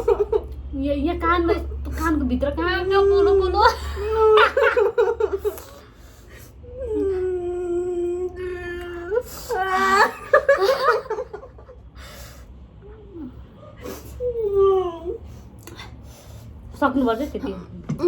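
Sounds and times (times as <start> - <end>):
woman whimpering and laughing: 3.4 - 5.4, 6.8 - 11.6
woman moaning cry: 6.7 - 11.0, 13.0 - 15.3.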